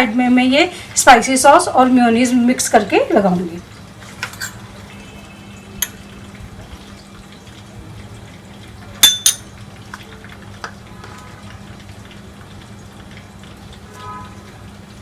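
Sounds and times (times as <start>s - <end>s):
kitchenware clicking and knocking: 4.2s - 4.6s, 9.0s - 9.5s.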